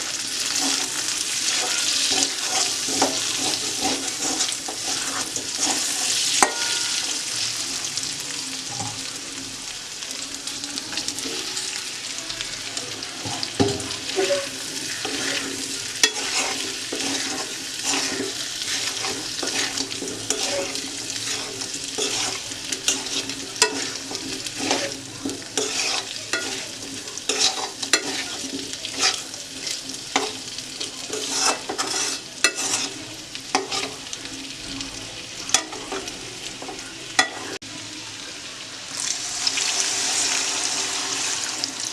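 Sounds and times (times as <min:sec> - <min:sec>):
spatula scraping a pan: 0:00.0 - 0:07.4, 0:13.2 - 0:34.1, 0:35.5 - 0:37.6
food sizzling in a pan: 0:00.0 - 0:41.9.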